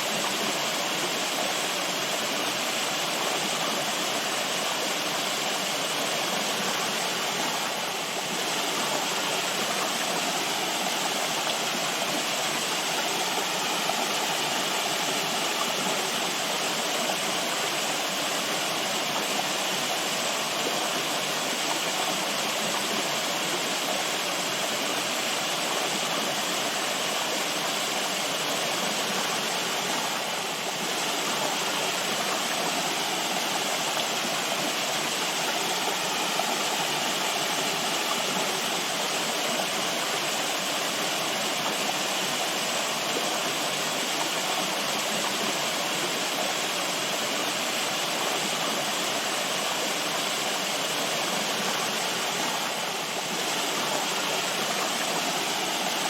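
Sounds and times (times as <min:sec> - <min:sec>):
water rushing: 0:00.0 - 0:56.0.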